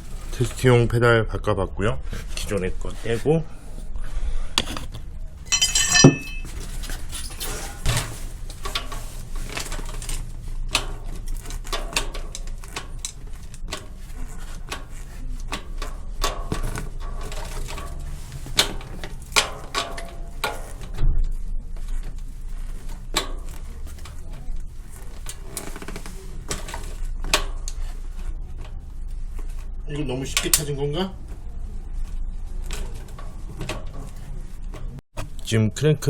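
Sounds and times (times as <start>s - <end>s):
metal parts and tools clinking: 5.5s - 7.6s.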